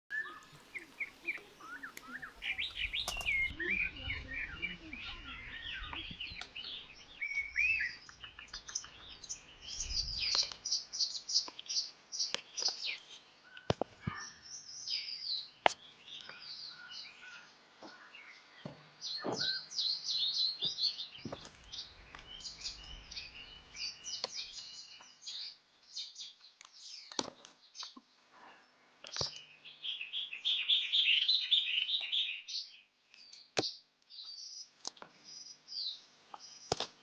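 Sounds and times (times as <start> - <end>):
small birds chirping: 0.1 - 37.0
sharp clicks: 0.4 - 3.5.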